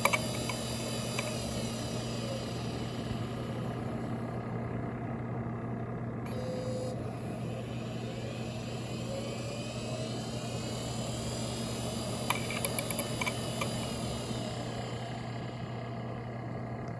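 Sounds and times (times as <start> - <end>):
hard drive spinning whine: 0.0 - 16.9.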